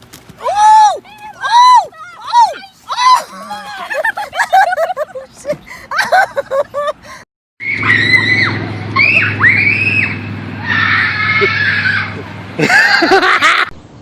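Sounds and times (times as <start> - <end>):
child screaming: 0.4 - 4.0, 7.6 - 12.2.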